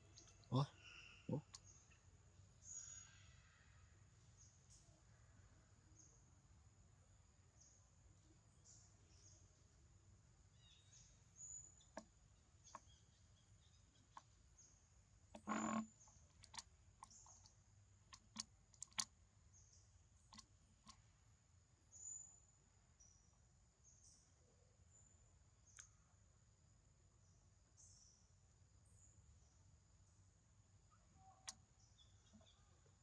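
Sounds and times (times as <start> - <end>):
faint high-pitched chirps: 0.0 - 6.3, 10.4 - 21.0, 27.2 - 33.0.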